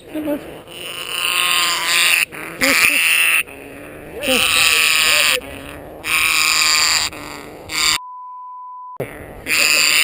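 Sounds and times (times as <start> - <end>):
parrot screeching: 0.6 - 8.0, 9.5 - 10.0.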